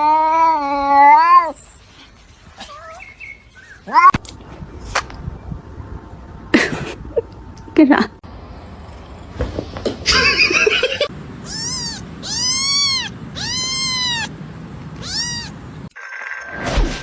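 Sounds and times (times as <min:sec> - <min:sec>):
cat meowing: 0:11.4 - 0:15.9.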